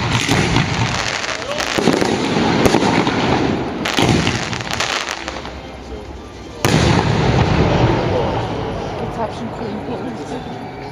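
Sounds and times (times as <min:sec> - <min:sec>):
loud firework bang: 0:00.0 - 0:04.8, 0:06.6 - 0:08.5
fireworks crackling and popping: 0:00.0 - 0:08.3.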